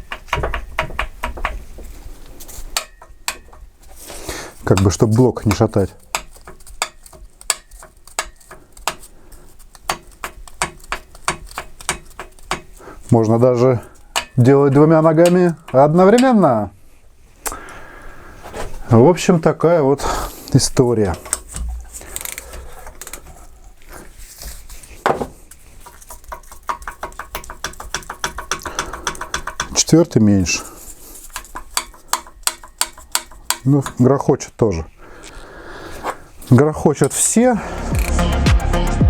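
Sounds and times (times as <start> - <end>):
engine parts clacking: 0.0 - 16.6, 20.5 - 34.2
faint scraping and handling: 1.6 - 27.6, 28.4 - 34.2, 34.9 - 37.4.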